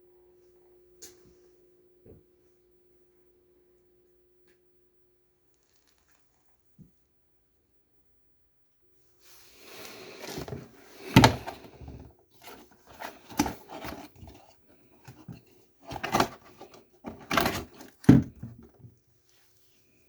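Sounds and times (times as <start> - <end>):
faint steady hum: 0.0 - 20.0
hard objects knocking and clattering: 10.2 - 18.9.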